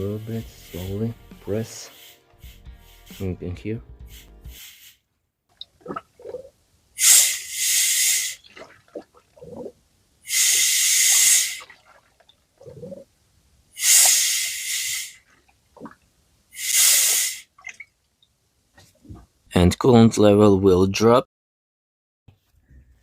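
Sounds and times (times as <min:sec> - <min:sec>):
compressed air hissing: 0:00.0 - 0:03.4, 0:04.0 - 0:05.1, 0:07.0 - 0:08.4, 0:10.3 - 0:11.7, 0:13.8 - 0:15.2, 0:16.6 - 0:17.5.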